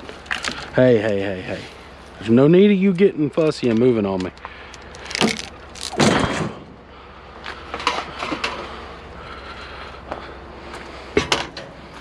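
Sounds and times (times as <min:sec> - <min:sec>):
steady low hum: 0:00.0 - 0:12.0
junk knocking and clattering: 0:05.1 - 0:06.7.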